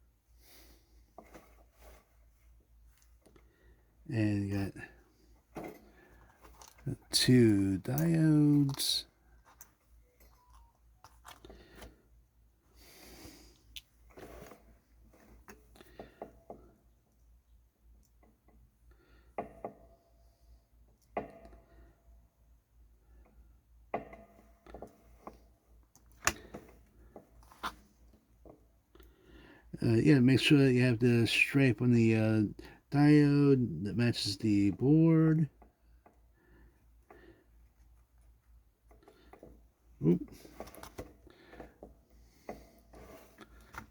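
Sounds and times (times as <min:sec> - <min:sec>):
rustling of small parts: 0:05.3 - 0:12.0.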